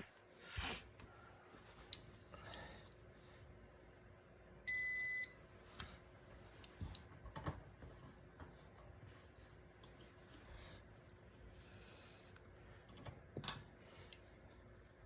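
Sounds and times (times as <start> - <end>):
electronic beep: 4.6 - 5.4.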